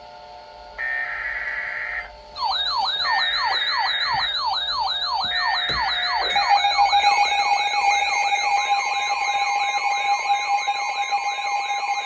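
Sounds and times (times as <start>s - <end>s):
electronic siren yelping: 0.8s - 7.7s.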